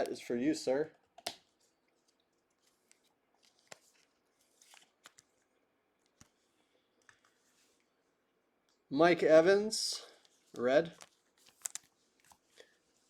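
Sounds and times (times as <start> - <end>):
trading cards rustling: 1.4 - 7.8, 10.2 - 13.0.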